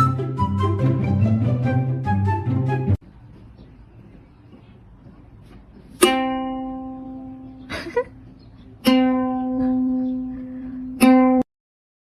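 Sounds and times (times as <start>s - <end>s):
plucked string instrument notes: 6.0s - 7.7s, 8.8s - 11.5s.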